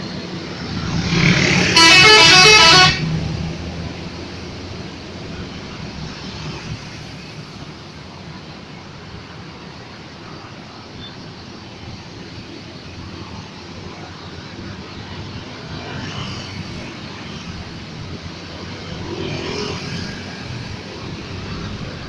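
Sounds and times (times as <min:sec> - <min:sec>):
road noise: 0:00.0 - 0:22.0.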